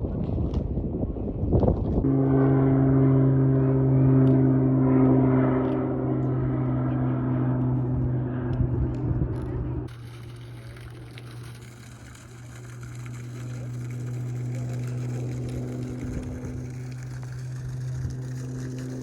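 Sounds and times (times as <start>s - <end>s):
low machine hum: 1.8s - 19.0s
faint higher tone: 2.1s - 4.9s.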